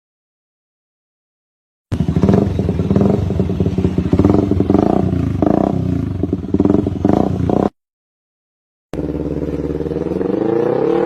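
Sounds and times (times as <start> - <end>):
engine revving: 1.9 - 7.8, 9.0 - 11.0.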